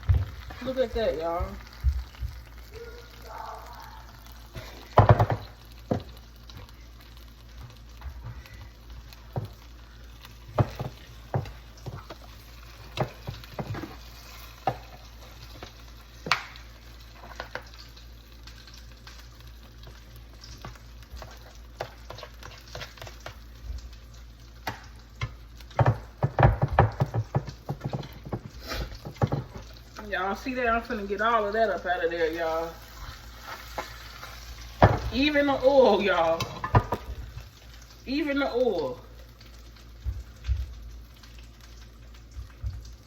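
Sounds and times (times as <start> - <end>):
sharp pops and spatters: 0.0 - 30.3, 32.6 - 43.0
corn sizzling in butter: 0.0 - 43.0.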